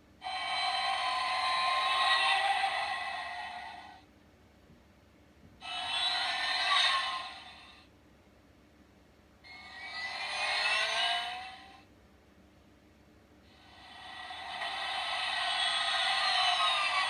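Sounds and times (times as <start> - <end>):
tinny toy car engine revs: 0.2 - 4.0, 5.6 - 7.8, 9.5 - 11.8, 13.5 - 17.0.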